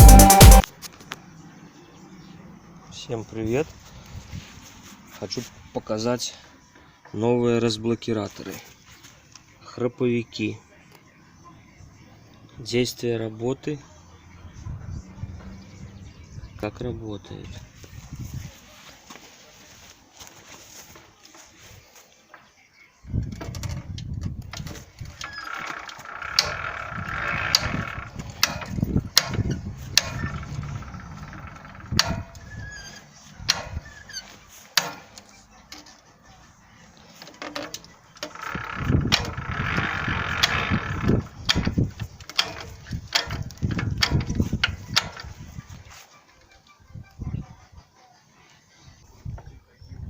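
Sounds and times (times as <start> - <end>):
low rumble: 14.2 - 17.1, 27.0 - 32.8
ratchet wheels clicking: 25.2 - 35.3, 37.3 - 45.4.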